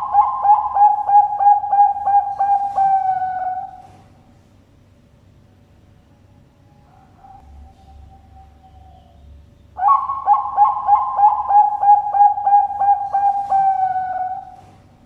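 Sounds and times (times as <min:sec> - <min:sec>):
dove cooing: 0:00.0 - 0:04.1, 0:09.8 - 0:14.9.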